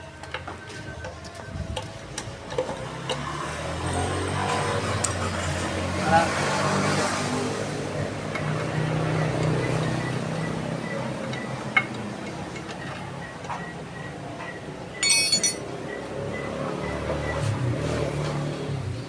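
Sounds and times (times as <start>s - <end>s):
ringing metallic clink: 15.0s - 15.6s.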